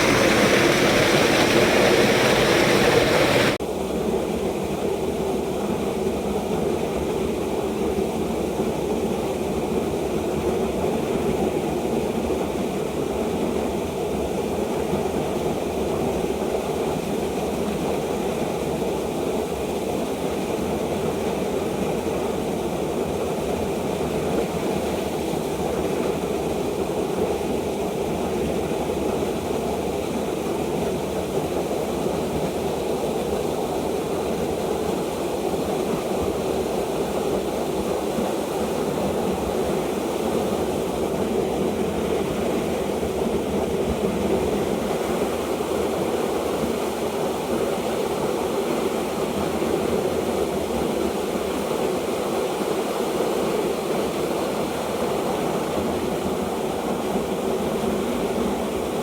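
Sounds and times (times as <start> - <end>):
stream rushing over rocks: 0.0 - 3.6.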